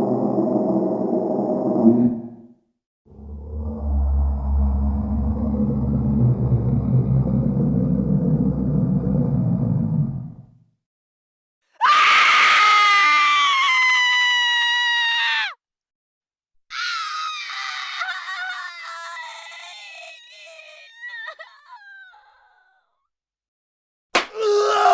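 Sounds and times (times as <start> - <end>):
synthetic monster cries: 16.7 - 22.8.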